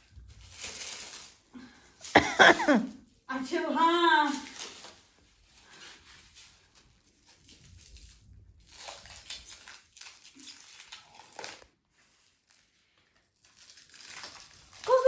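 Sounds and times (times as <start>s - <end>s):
packaging crinkling and rustling: 0.0s - 15.0s.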